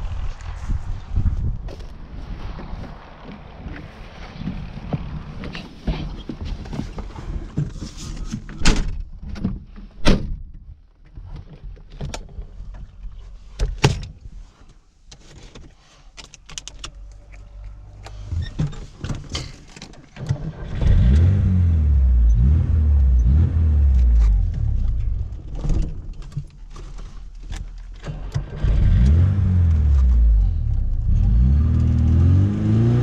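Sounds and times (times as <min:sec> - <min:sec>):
clicks and thunks of handling: 0:05.4 - 0:20.4, 0:24.0 - 0:28.5.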